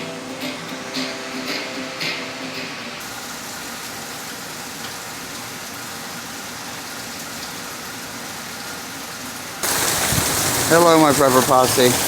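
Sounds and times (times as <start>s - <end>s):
heavy rain: 2.9s - 12.0s.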